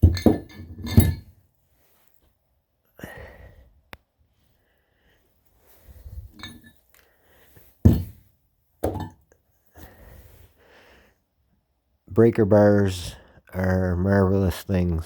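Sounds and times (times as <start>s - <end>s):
metal tools clinking and clanking: 0.0s - 1.4s, 6.4s - 6.8s.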